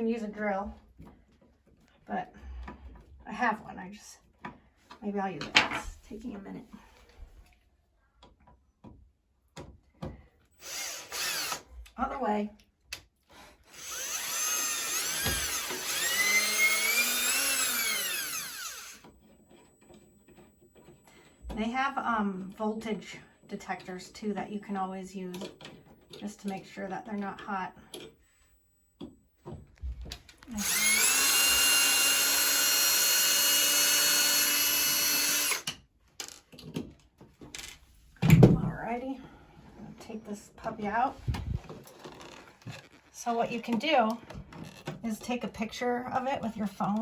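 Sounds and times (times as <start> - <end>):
power drill motor whining: 10.6 - 11.8, 13.7 - 29.7, 30.4 - 35.7.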